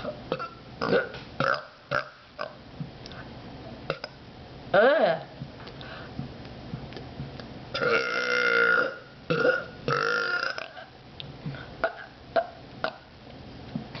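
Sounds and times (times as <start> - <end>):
person burping: 0.0 - 2.5, 7.8 - 10.9, 11.8 - 13.1.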